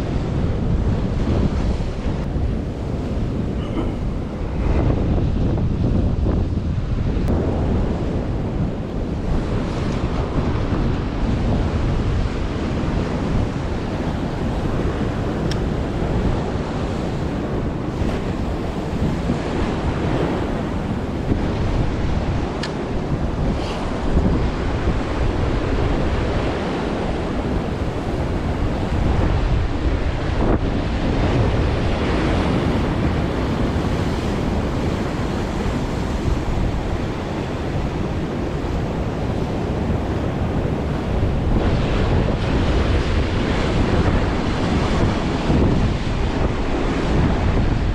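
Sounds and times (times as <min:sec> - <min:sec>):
surf breaking on shore: 0:00.0 - 0:47.9
wind buffeting microphone: 0:00.0 - 0:47.9.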